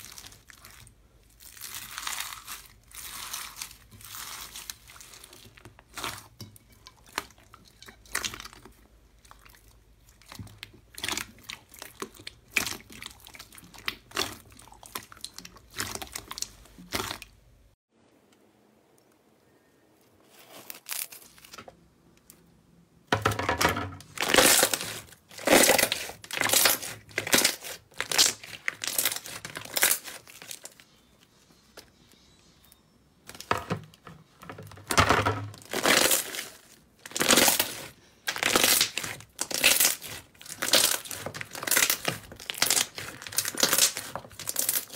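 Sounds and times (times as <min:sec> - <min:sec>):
slime crackling and popping: 0:00.0 - 0:06.4, 0:10.1 - 0:17.4, 0:24.0 - 0:30.8, 0:35.6 - 0:44.9.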